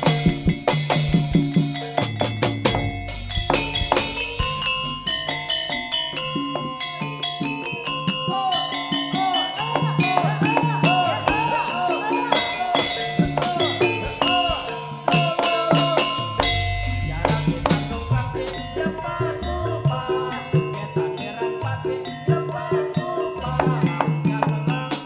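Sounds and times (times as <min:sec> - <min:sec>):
drum strokes: 0:00.0 - 0:06.9, 0:09.1 - 0:19.2
gamelan ensemble playing: 0:00.0 - 0:25.0.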